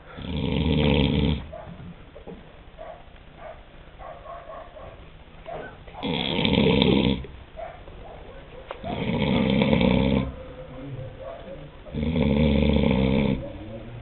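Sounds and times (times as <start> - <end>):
quiet breathing: 0.0 - 0.4, 8.8 - 13.8
man snoring loudly: 0.2 - 1.5, 6.0 - 7.3, 8.9 - 10.4, 11.9 - 13.5.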